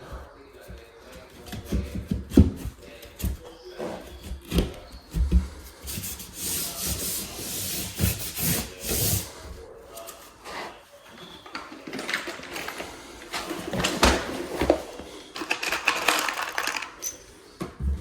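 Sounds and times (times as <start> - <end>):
drywall scraping against edges: 1.0 - 12.0.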